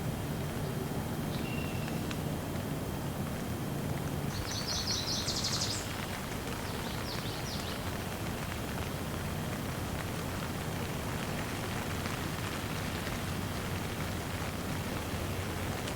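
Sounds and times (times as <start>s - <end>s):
bird chirping: 1.3s - 2.1s, 4.3s - 6.0s.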